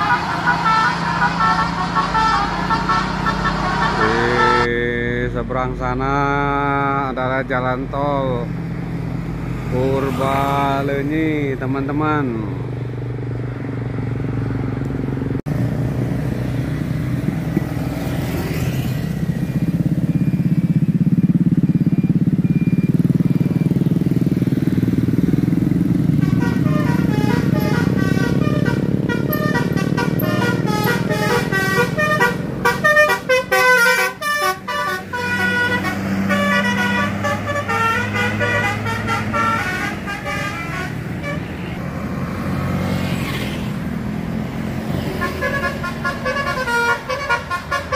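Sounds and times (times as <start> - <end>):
musical air horn melody: 0.0 - 4.7, 26.1 - 41.6, 45.1 - 47.9
bus engine passing: 0.0 - 5.4, 8.2 - 11.5, 12.5 - 47.9.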